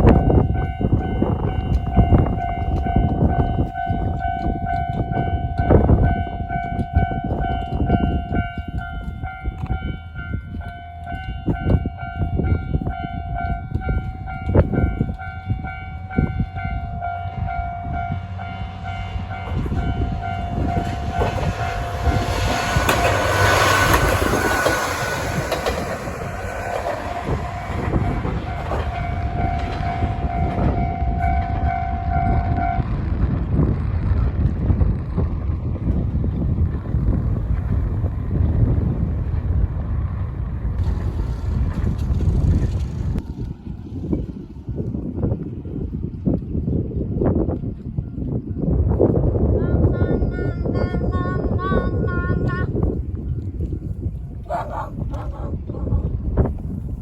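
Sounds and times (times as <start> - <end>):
level-crossing warning bell: 0.0 - 33.0
diesel railcar passing: 0.0 - 57.0
wind buffeting microphone: 0.0 - 57.0.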